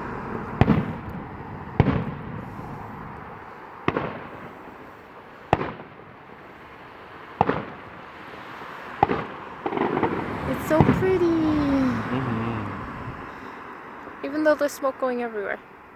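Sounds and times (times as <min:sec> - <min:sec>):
fireworks bangs with echoing rumble: 0:00.0 - 0:08.4, 0:09.0 - 0:11.6.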